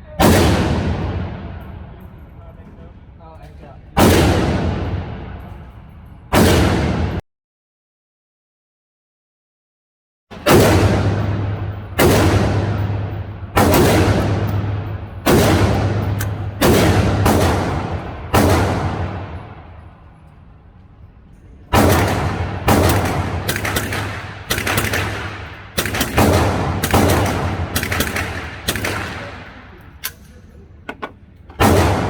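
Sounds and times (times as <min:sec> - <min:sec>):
rifle shots with ringing echo: 0:00.1 - 0:02.2, 0:04.0 - 0:07.2, 0:10.3 - 0:20.3, 0:21.7 - 0:32.0.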